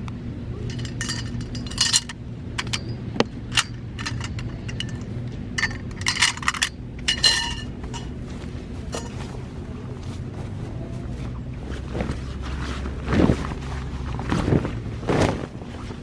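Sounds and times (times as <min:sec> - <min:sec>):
steady low hum: 0:00.0 - 0:16.0
small hard items clinking: 0:00.7 - 0:08.2.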